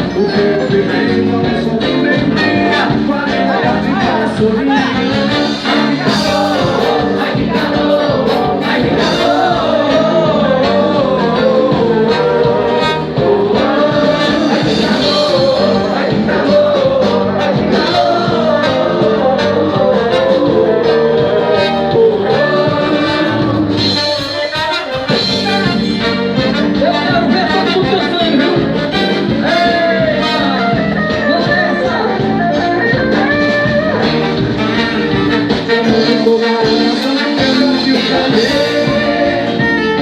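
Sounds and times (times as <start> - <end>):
person singing: 0.0 - 25.1, 35.6 - 40.0
brass instruments: 0.0 - 40.0
live band playing: 0.0 - 40.0.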